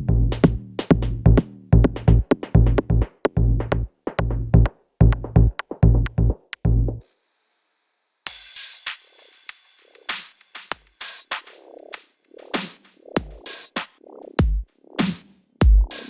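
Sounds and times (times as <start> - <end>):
electronic music with drum-machine beat: 0.0 - 7.0, 8.3 - 16.0.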